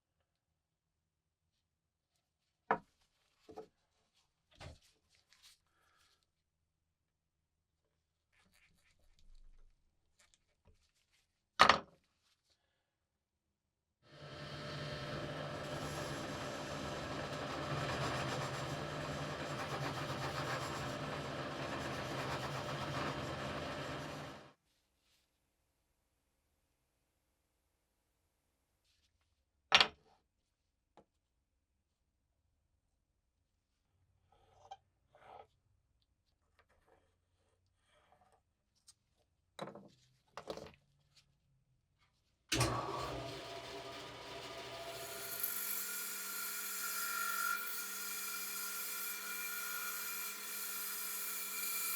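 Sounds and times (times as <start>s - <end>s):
faint clicks and scrapes: 8.3s - 11.4s, 34.2s - 41.4s
power tool humming: 14.1s - 24.5s, 42.6s - 51.9s.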